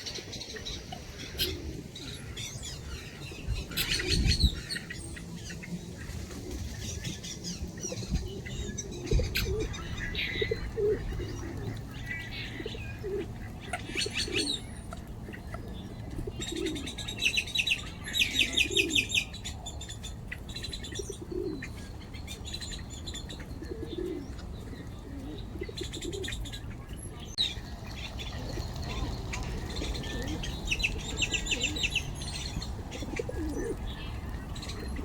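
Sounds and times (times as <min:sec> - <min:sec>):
birds chirping trills: 0:00.0 - 0:35.0
pigeons cooing: 0:00.0 - 0:35.0.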